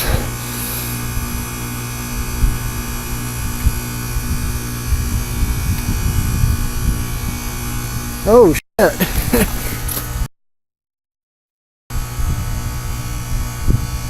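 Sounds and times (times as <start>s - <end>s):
low rumble on microphone: 0.0s - 8.2s, 12.0s - 14.0s
heat pump unit humming: 0.0s - 10.3s, 11.9s - 14.0s.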